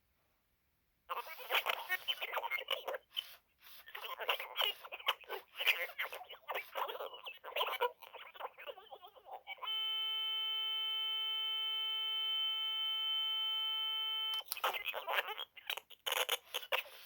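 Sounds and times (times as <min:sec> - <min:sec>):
garbled toy voice chatter: 0:01.1 - 0:09.7, 0:14.4 - 0:17.0.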